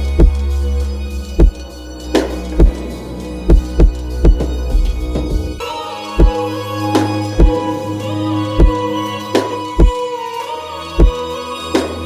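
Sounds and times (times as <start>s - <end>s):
sustained synth chords: 0.0s - 9.3s
deep kick-drum beat: 1.4s - 1.6s, 2.2s - 2.8s, 3.5s - 5.6s, 7.4s - 7.6s.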